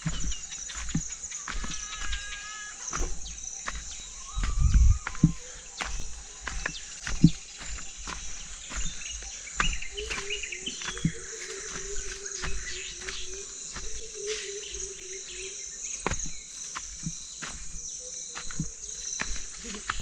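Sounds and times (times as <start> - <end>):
footsteps rustling through grass: 0.0 - 20.0
insects chorus: 0.0 - 20.0.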